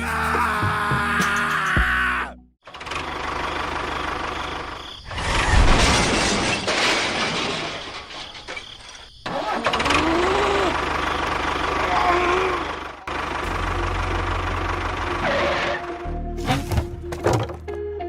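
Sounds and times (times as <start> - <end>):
engine running with low beat: 10.0 - 17.9.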